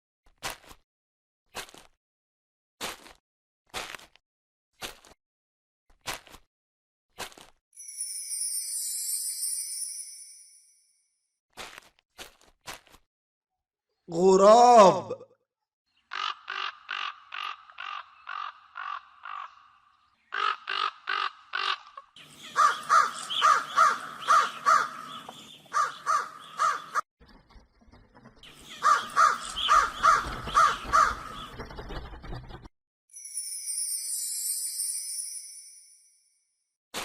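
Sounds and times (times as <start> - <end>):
crows cawing: 16.1 - 27.0, 28.7 - 31.5.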